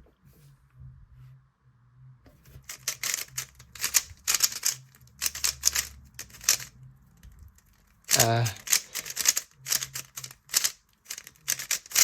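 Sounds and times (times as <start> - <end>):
puzzle cube clattering clicks: 2.6 - 12.0.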